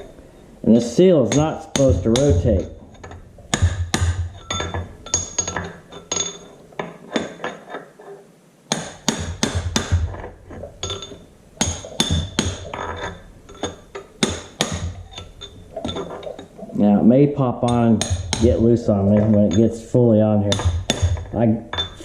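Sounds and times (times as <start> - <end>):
hammer tapping sheet metal: 1.3 - 6.3, 17.6 - 19.8, 20.5 - 21.9.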